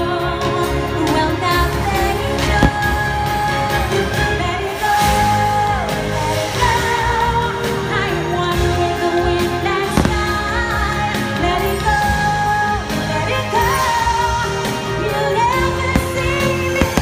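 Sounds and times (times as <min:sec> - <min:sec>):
firework bang: 0:10.0 - 0:10.5.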